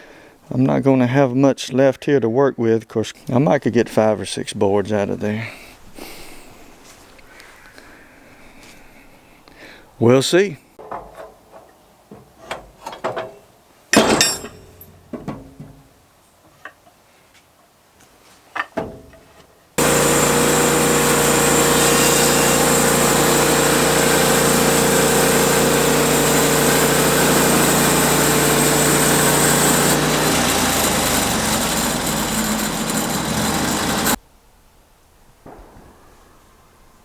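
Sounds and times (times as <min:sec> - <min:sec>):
sawmill saw cutting log: 0:19.8 - 0:34.2.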